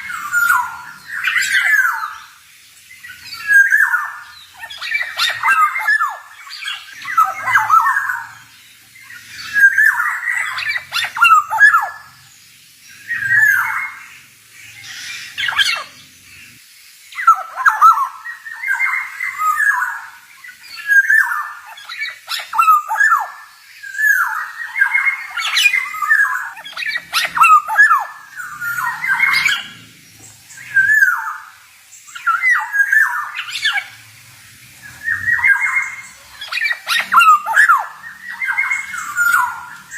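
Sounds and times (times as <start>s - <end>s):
oriole calling: 3.0s - 12.2s, 17.2s - 29.9s, 30.5s - 39.9s.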